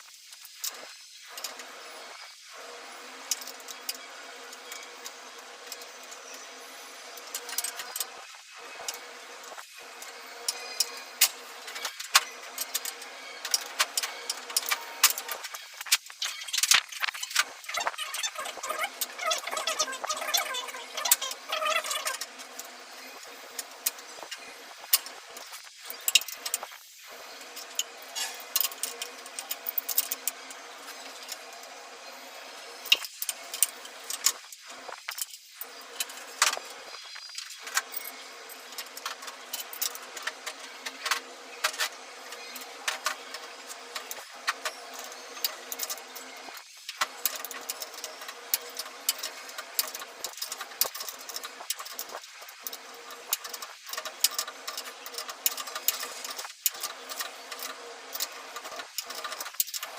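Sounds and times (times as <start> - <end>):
metallic clicks and rattles: 37.4 - 59.9.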